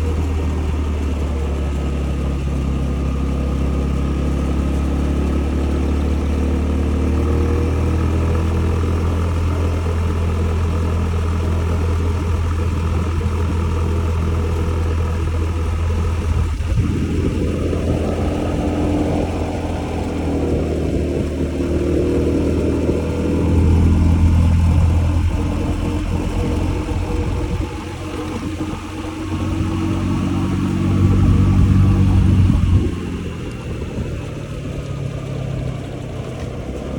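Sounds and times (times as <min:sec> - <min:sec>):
scooter engine running: 0:00.0 - 0:36.9
wind noise on microphone: 0:11.2 - 0:36.9.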